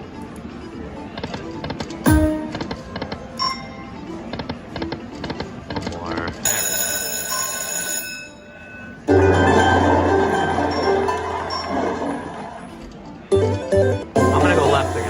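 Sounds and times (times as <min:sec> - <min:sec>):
ringing bell-like chime: 0:06.5 - 0:09.4
loud jingle: 0:06.5 - 0:12.0
slot machine reels clicking: 0:09.1 - 0:12.4.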